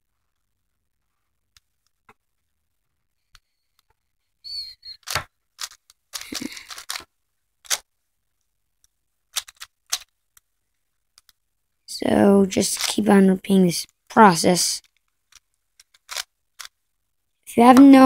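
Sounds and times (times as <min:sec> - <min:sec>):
plastic puzzle cube clicking: 0:04.9 - 0:07.9, 0:09.3 - 0:10.4, 0:11.2 - 0:11.4, 0:14.8 - 0:16.8.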